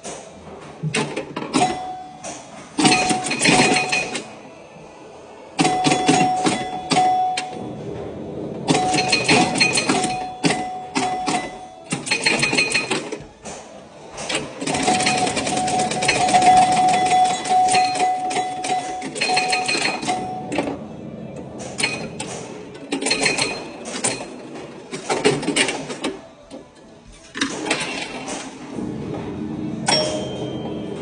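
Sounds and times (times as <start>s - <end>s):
pinball mechanical clacking: 0.0s - 4.5s, 5.5s - 31.0s
steady ringing tone: 5.6s - 13.2s, 14.7s - 21.1s, 29.8s - 31.0s.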